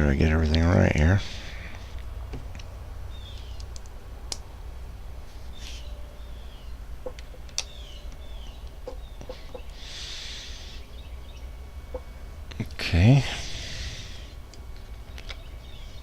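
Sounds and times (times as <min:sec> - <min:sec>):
low steady hum: 0:00.0 - 0:16.0
bird chirps: 0:03.1 - 0:03.7, 0:05.4 - 0:12.4, 0:13.3 - 0:16.0.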